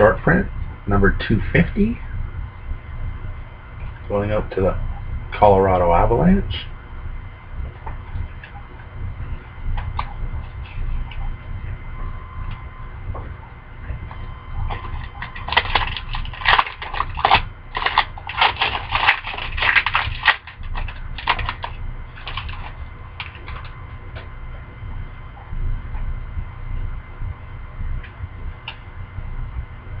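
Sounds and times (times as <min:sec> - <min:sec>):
low hum: 0:00.0 - 0:30.0
cards and wrapper rustling: 0:14.7 - 0:23.8.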